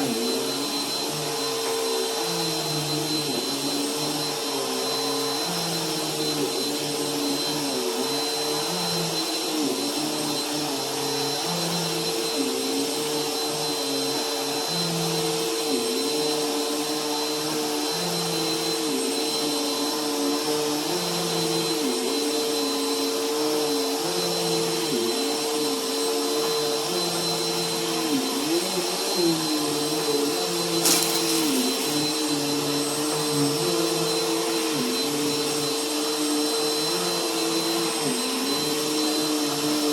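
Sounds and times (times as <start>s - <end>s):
vacuum cleaner on carpet: 0.0s - 39.9s.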